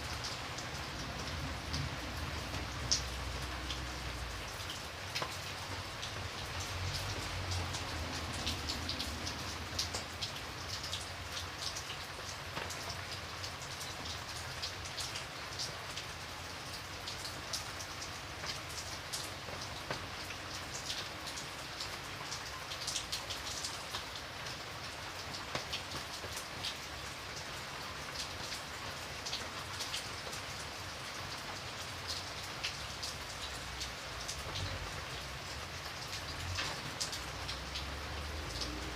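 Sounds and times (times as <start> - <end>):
rain hissing: 0.0 - 12.7, 33.5 - 38.9
raindrop ticks: 0.1 - 38.9.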